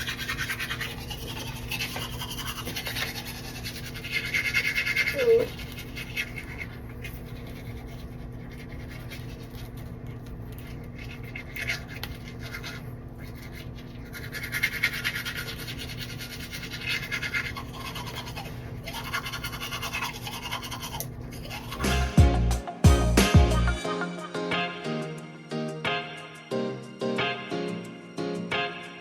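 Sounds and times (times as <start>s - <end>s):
music: 21.8s - 29.0s.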